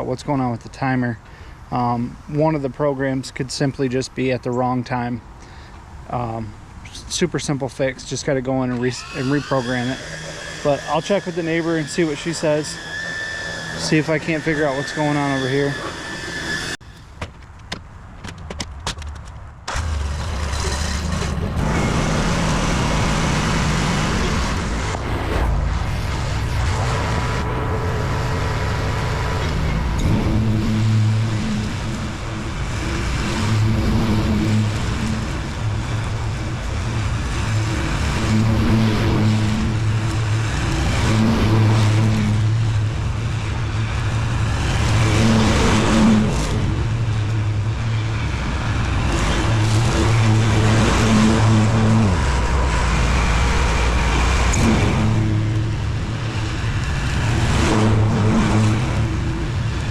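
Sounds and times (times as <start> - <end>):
lawn mower engine running: 8.7 - 16.8.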